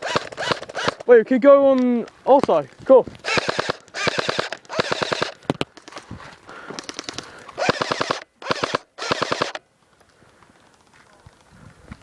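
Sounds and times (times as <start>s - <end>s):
airsoft guns firing bursts: 0.0s - 1.2s, 3.2s - 6.0s, 6.6s - 9.6s.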